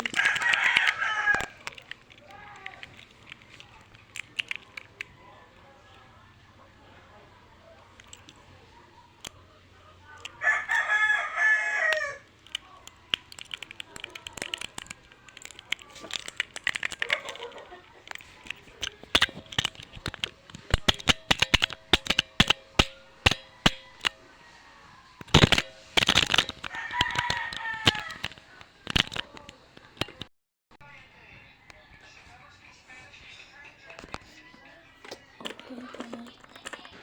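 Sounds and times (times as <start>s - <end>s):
keyboard keys clicking: 0.0s - 5.1s, 11.9s - 24.2s, 25.2s - 30.3s.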